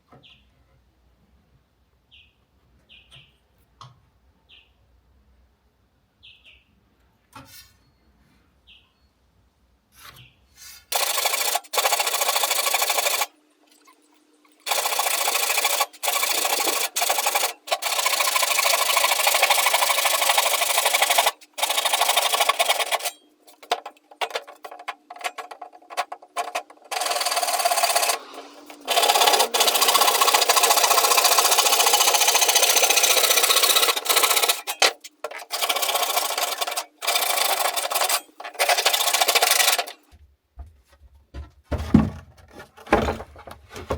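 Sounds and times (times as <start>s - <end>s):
saw rasping through wood: 14.7s - 39.9s.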